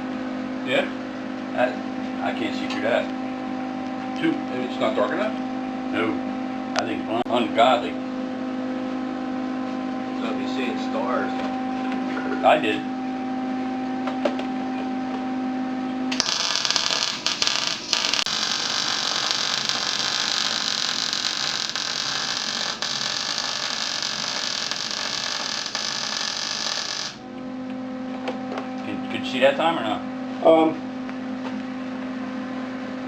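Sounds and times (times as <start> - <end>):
machine hum: 0.0 - 29.2
welding arc crackling: 16.1 - 27.2.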